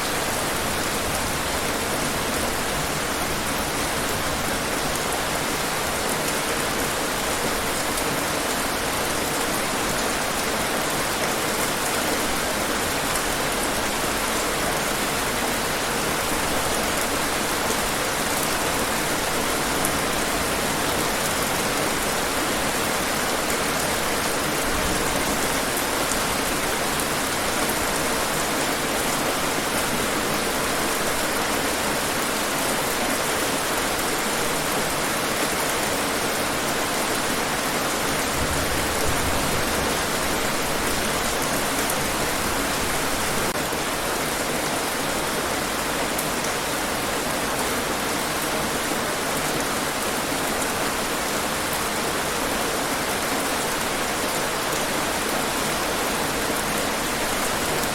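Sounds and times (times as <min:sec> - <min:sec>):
heavy rain on hard surfaces: 0:00.0 - 0:57.9.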